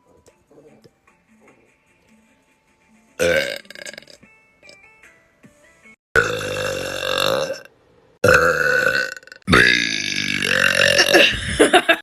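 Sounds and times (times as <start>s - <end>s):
person burping: 3.2s - 4.8s, 6.2s - 11.3s.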